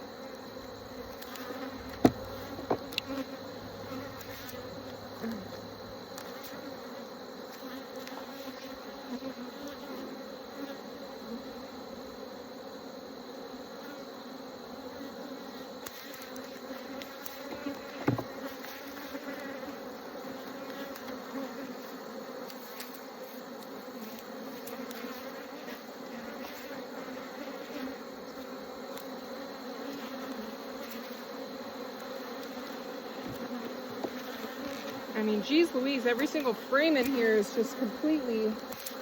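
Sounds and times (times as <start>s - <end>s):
honeybees buzzing: 0.0s - 39.0s
short knock: 18.0s - 18.3s.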